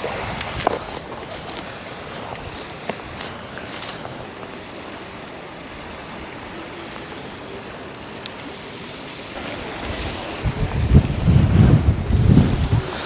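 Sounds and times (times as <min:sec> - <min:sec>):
waves on a river: 0:00.0 - 0:13.0
wind buffeting microphone: 0:00.0 - 0:13.0
strong wind rushing: 0:09.4 - 0:13.0.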